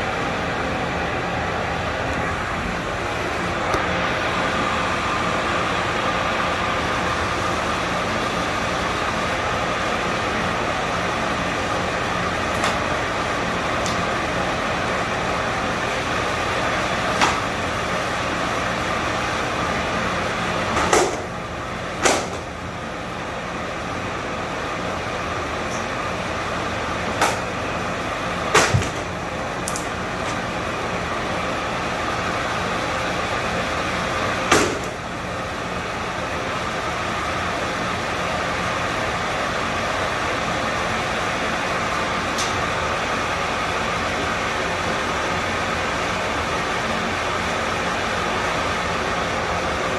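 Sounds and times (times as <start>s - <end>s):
sharp knocks: 28.5s - 29.1s.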